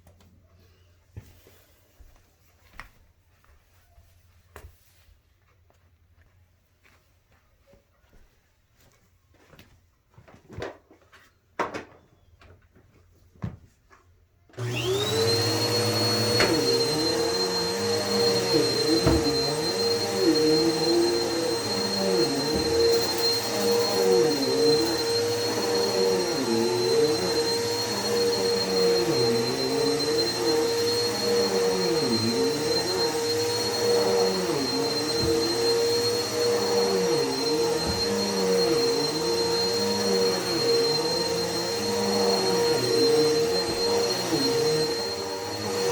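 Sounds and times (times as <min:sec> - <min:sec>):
vacuum cleaner whining: 0:14.5 - 0:45.9.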